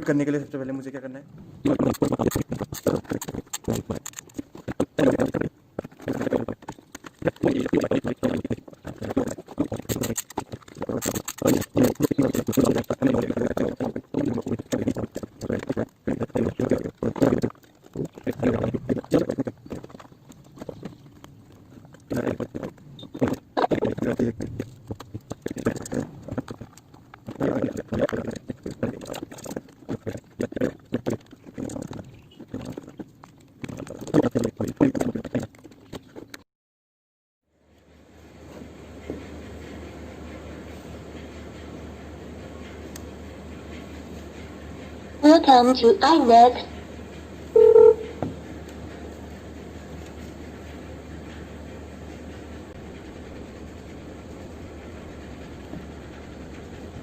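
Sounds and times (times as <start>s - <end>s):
plastic parts clicking and knocking: 1.7s - 36.4s.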